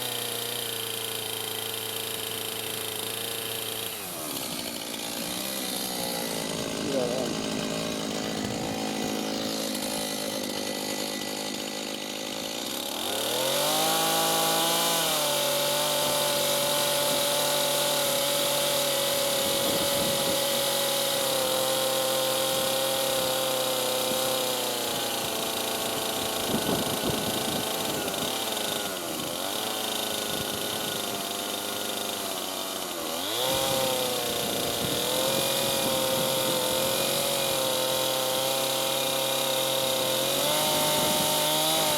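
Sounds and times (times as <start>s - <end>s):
chainsaw cutting a log: 0.0s - 41.9s.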